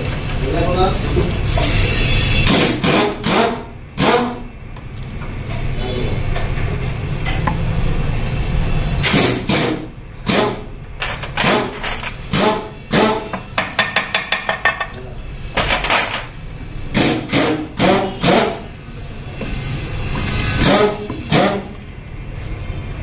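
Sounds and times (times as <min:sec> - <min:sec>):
metallic knocks on engine crankcase: 0:13.6 - 0:15.0.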